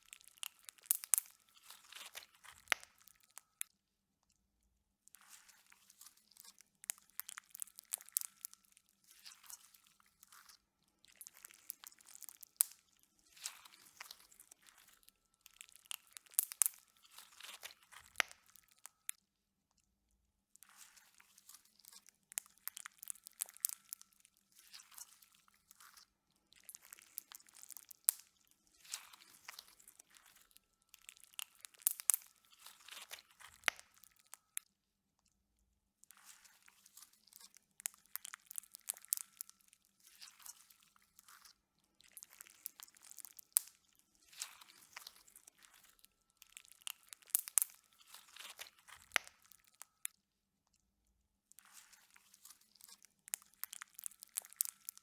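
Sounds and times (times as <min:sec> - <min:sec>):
slime clicking and popping: 0:00.4 - 0:01.3, 0:15.9 - 0:16.8, 0:31.3 - 0:32.3, 0:33.0 - 0:34.1, 0:46.6 - 0:47.8, 0:48.4 - 0:49.8.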